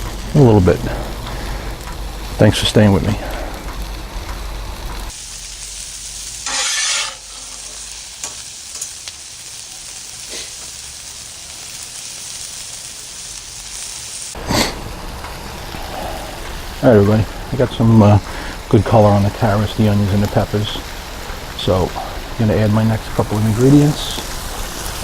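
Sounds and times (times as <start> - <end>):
vegetables sizzling on griddle: 0.0 - 25.0
metal spatula scraping griddle: 6.4 - 8.4.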